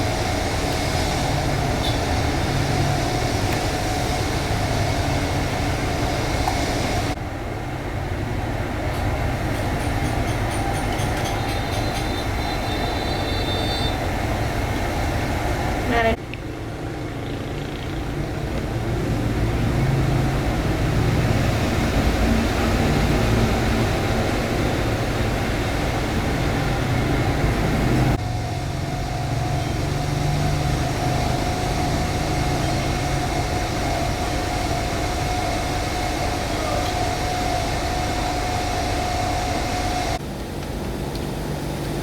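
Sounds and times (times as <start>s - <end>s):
machine rumbling: 14.1s - 42.0s.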